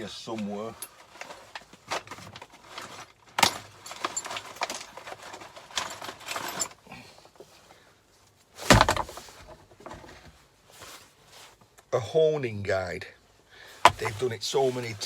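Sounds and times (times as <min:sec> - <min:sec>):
metal tools clinking and rattling: 0:00.6 - 0:06.8
heavy thump of object put down: 0:08.7 - 0:10.0, 0:13.8 - 0:14.2.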